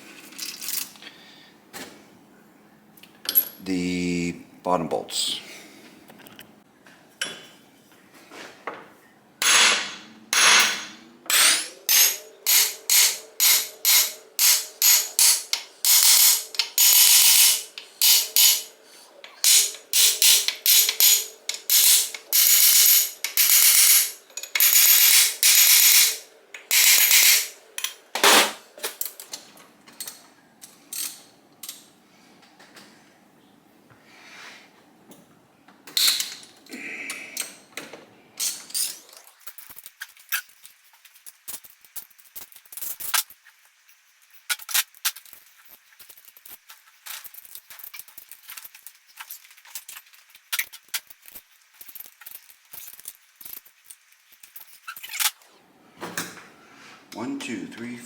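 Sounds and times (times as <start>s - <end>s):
ratchet wrench clicking: 11.3s - 18.7s, 19.4s - 27.6s.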